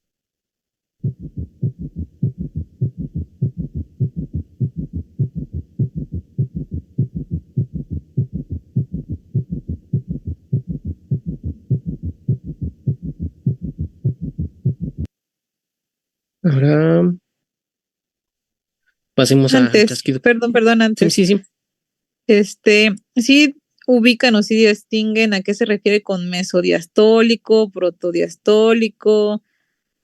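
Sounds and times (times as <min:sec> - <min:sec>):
fast heartbeat thuds: 0:01.0 - 0:15.1.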